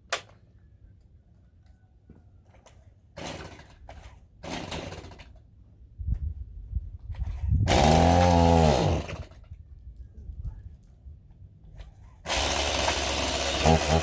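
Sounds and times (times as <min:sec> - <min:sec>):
saw scraping bursts: 0:03.2 - 0:05.3, 0:07.3 - 0:09.4, 0:12.2 - 0:14.0
power saw motor spinning: 0:07.7 - 0:09.4, 0:12.2 - 0:14.0.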